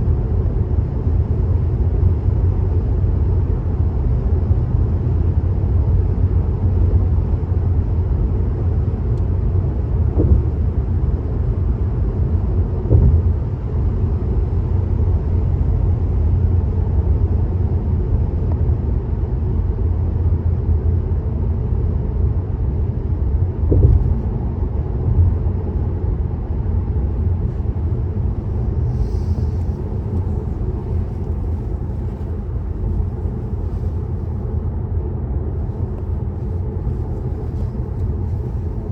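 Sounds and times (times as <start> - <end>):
tyre and road noise: 10.1 - 10.8, 12.8 - 13.5, 27.2 - 34.7, 35.6 - 38.9.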